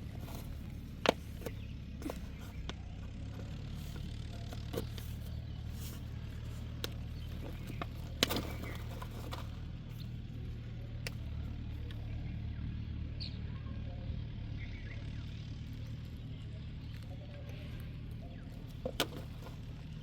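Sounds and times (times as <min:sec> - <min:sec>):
motor humming: 0:00.0 - 0:12.4.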